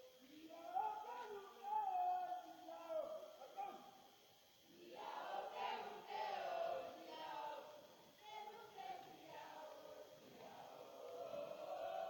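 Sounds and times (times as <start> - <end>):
group singing or chanting: 4.7 - 12.0.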